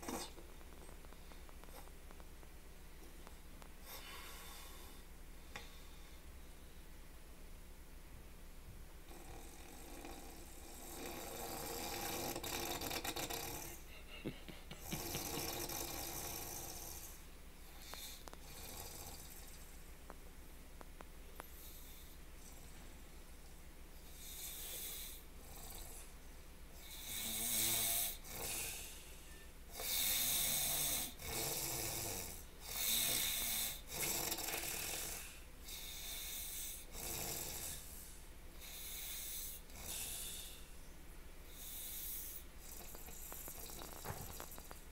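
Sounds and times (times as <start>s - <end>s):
person snoring: 9.1s - 14.0s, 14.7s - 17.2s, 26.9s - 29.0s, 29.8s - 38.0s, 41.6s - 44.8s.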